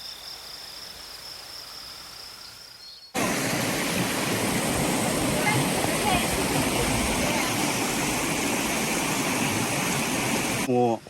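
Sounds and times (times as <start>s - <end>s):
insects trilling: 0.0s - 3.2s
rushing water: 3.2s - 11.0s.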